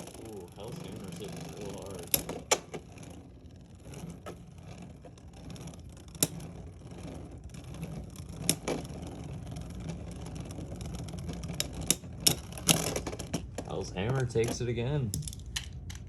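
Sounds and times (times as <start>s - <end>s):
spinning tops whirring: 0.0s - 16.0s
spinning tops clacking together: 11.3s - 16.0s.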